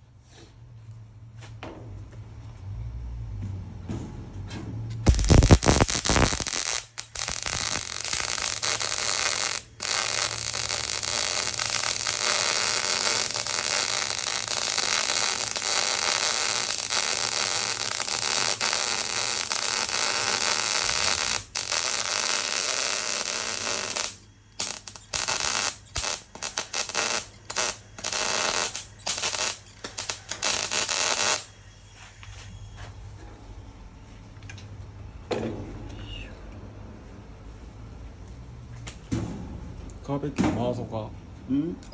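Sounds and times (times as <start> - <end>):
arc welding crackle: 4.9 - 31.6.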